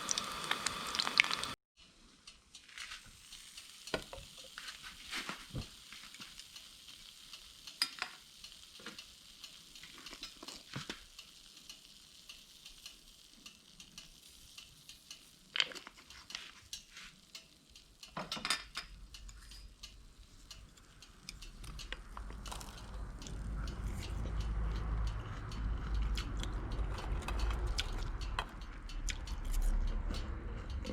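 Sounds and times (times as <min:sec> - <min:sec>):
fish sizzling in oil: 0:00.0 - 0:01.6, 0:02.4 - 0:29.4
utensil clicking against pan: 0:06.4 - 0:30.3.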